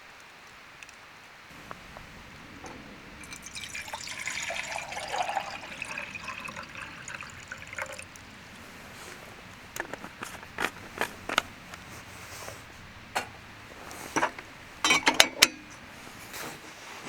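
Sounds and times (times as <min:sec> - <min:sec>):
liquid pouring into container: 0:01.5 - 0:11.6.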